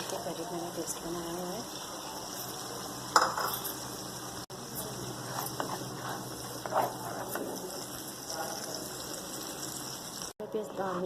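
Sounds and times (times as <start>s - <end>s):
oil sizzling: 0.0s - 11.0s
spoon scraping a pan: 3.2s - 3.9s, 4.8s - 8.9s.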